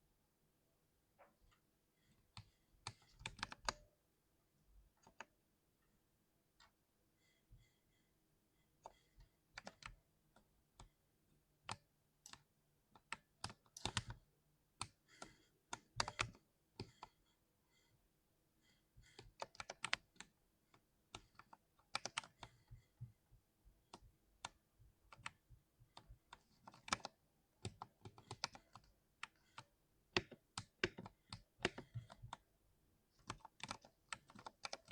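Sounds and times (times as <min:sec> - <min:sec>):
keyboard keystrokes clicking: 0:26.6 - 0:29.6, 0:30.2 - 0:32.4, 0:33.2 - 0:34.9.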